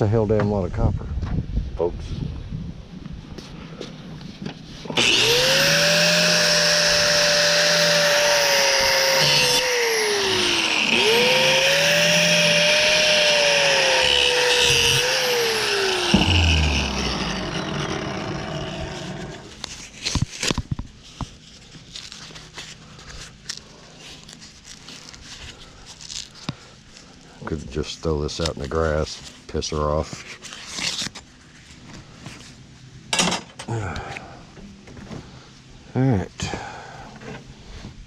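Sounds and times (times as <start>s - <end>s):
power tool blade cutting metal: 4.9s - 19.6s.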